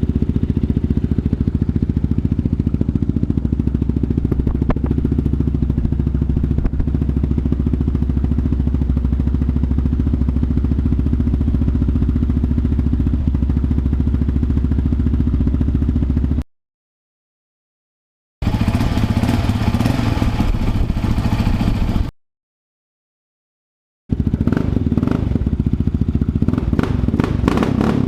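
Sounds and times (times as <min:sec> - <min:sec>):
engine idling: 0:00.0 - 0:16.4, 0:18.4 - 0:22.1.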